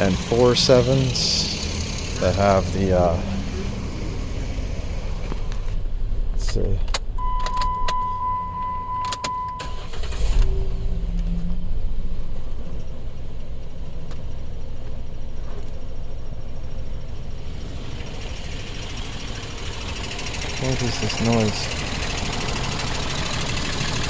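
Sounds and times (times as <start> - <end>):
car engine cranking and running: 0.0 - 24.0
steady electronic beep: 7.2 - 9.8.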